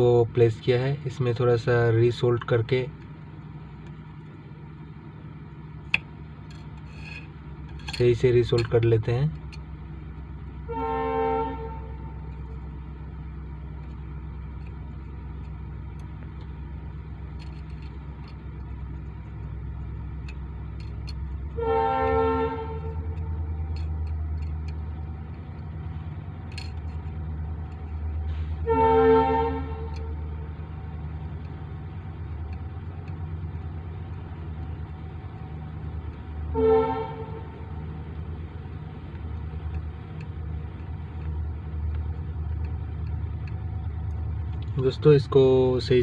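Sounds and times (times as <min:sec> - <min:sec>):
low hum: 0:00.0 - 0:46.0
vehicle horn blasts: 0:10.7 - 0:12.2, 0:21.5 - 0:23.2, 0:28.4 - 0:30.2, 0:36.5 - 0:37.7.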